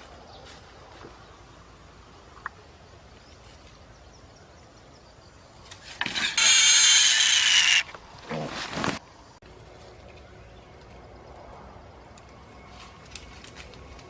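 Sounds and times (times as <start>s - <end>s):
wild pig squealing: 6.1s - 8.6s.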